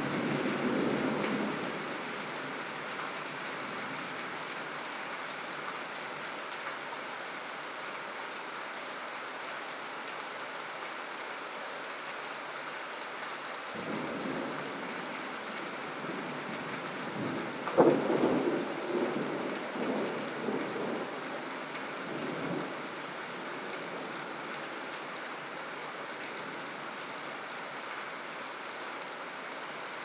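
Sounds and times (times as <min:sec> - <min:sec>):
thunder rumbling and cracking: 0:00.0 - 0:02.0, 0:13.8 - 0:22.8
steady rain: 0:00.0 - 0:30.0.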